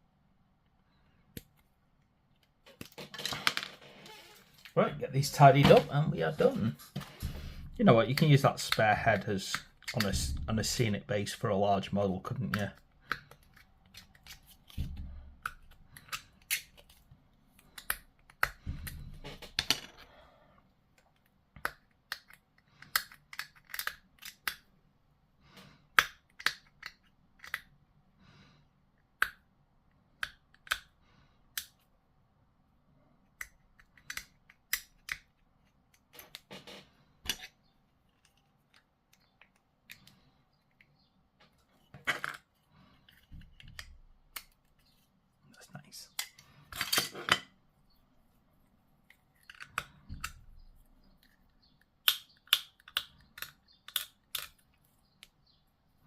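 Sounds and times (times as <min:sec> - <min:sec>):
plastic pieces clicking and snapping: 0:08.1 - 0:10.8, 0:12.3 - 0:20.1, 0:21.0 - 0:24.8, 0:25.6 - 0:27.8, 0:30.1 - 0:31.8, 0:33.3 - 0:36.6, 0:37.2 - 0:44.9, 0:49.3 - 0:55.4.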